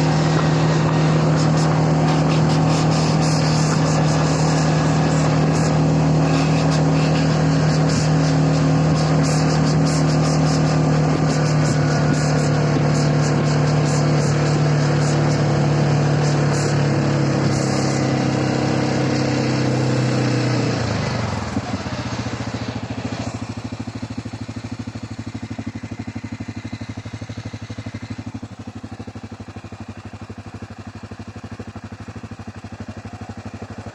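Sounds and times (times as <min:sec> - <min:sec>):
atv engine running and idling: 0:00.0 - 0:33.9.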